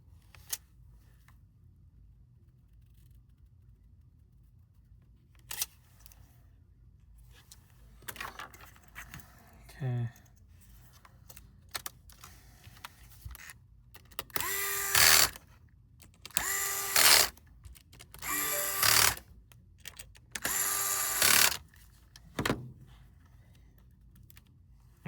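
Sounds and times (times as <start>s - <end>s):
electric screwdriver whirring: 14.2s - 15.4s, 16.3s - 17.4s, 18.2s - 19.3s, 20.4s - 21.6s.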